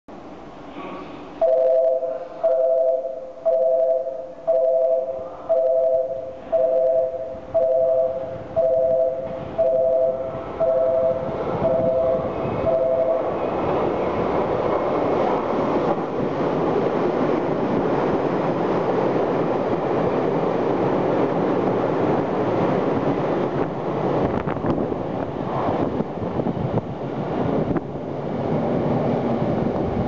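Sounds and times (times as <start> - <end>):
electric train passing at speed: 0.2 - 30.0
two-tone beep: 1.4 - 13.3.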